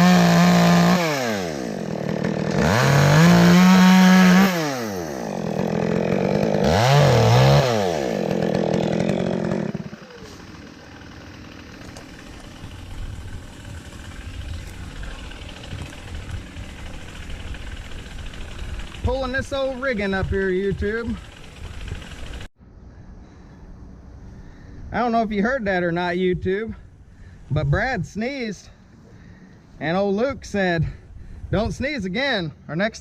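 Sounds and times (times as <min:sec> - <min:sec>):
chainsaw revving and idling: 0:00.0 - 0:22.5.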